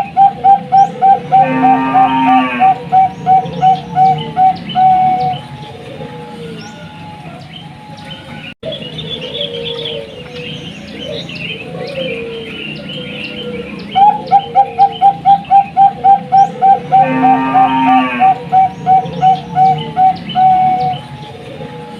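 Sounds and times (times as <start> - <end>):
higher bird chirps: 0.0 - 21.6
doves cooing: 0.0 - 21.9
rapid repeated coos: 11.0 - 21.9.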